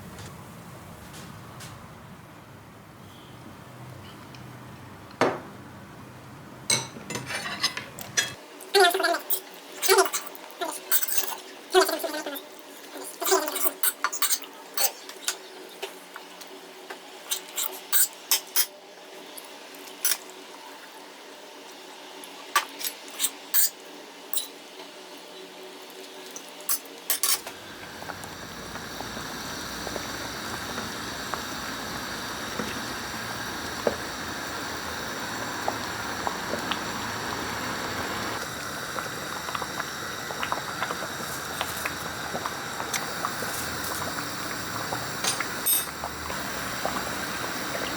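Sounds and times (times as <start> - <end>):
dishes and utensils clinking: 6.7 - 8.4, 9.3 - 11.4, 13.2 - 15.4, 17.3 - 18.7, 22.6 - 24.6, 26.7 - 27.5, 45.2 - 46.0.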